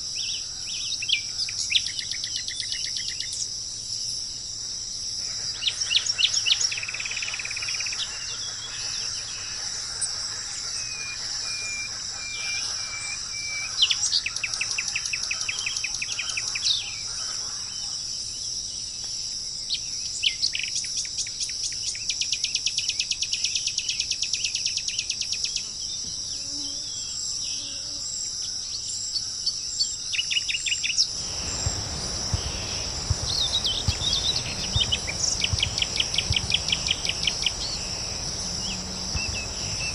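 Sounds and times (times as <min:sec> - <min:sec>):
songbirds singing trills: 0:00.0 - 0:04.3, 0:05.3 - 0:27.8, 0:28.6 - 0:39.9
high-pitched insect chorus: 0:00.0 - 0:39.9
low rushing noise: 0:31.1 - 0:39.9.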